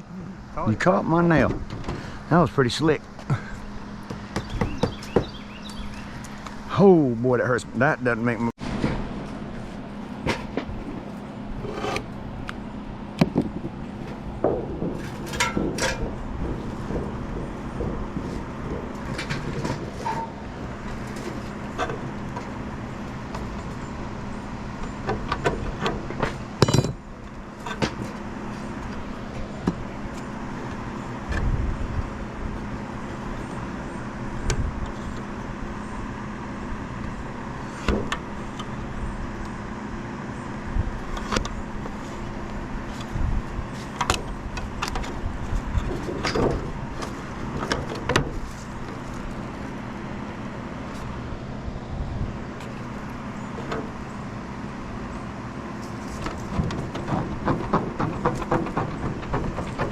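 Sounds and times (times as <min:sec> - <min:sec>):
steady motor hum: 0:00.0 - 0:59.9
knocks and clicks on roof: 0:04.0 - 0:05.4, 0:13.2 - 0:20.2, 0:56.1 - 0:59.9.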